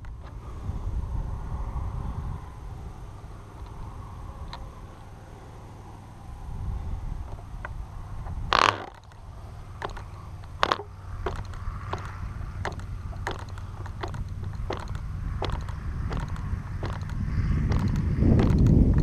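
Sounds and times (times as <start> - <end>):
low steady rumble: 0.0 - 19.0
model engine clicks and pops: 8.5 - 9.2, 9.8 - 19.0.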